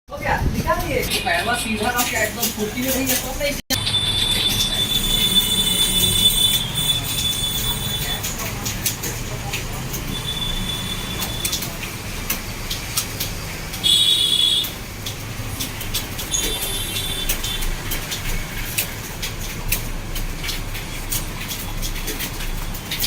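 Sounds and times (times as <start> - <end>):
traffic hum: 0.3 - 23.0.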